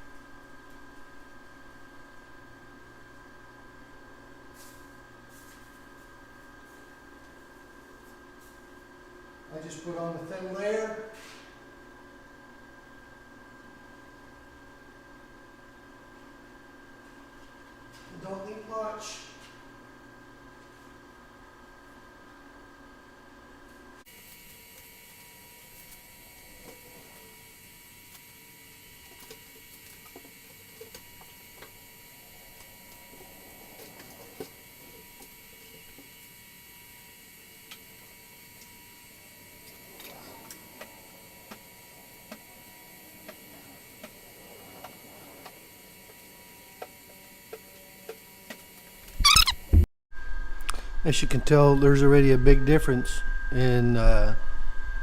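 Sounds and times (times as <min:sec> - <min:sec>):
faint electrical hum: 0:00.0 - 0:55.0.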